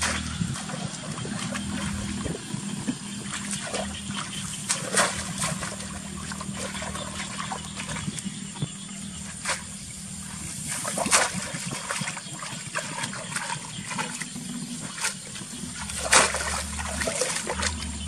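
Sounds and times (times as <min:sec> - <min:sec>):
steady low hum: 0:00.0 - 0:18.0
water splashing and trickling: 0:00.0 - 0:18.0.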